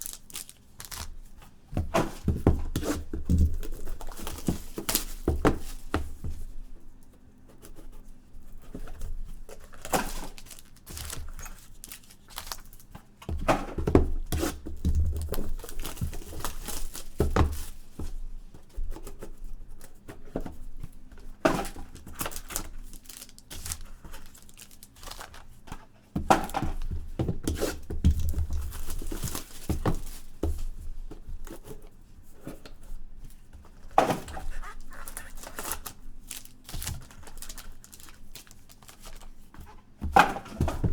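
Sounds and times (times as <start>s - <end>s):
wrappers tearing and crinkling: 0.0s - 1.4s, 9.5s - 13.0s, 15.1s - 17.6s, 21.7s - 25.6s, 34.1s - 39.5s
boxes knocking and thumping: 1.7s - 6.6s, 13.3s - 18.2s, 26.1s - 31.3s, 39.9s - 40.9s.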